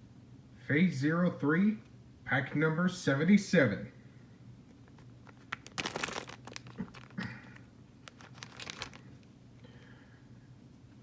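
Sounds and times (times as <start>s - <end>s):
wrapper tearing and crinkling: 5.2s - 7.4s, 8.0s - 9.2s.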